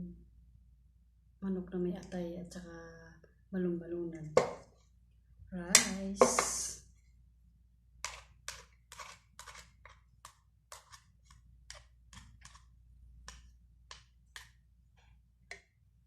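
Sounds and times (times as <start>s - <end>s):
utensil scraping a dish: 8.0s - 12.7s.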